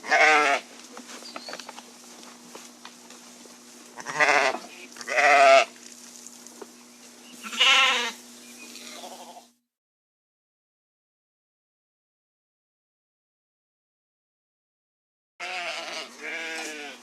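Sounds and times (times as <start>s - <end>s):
sheep bleating: 0.0s - 0.7s, 4.0s - 5.7s, 7.4s - 9.6s, 15.4s - 17.0s
faint hum: 0.0s - 9.6s.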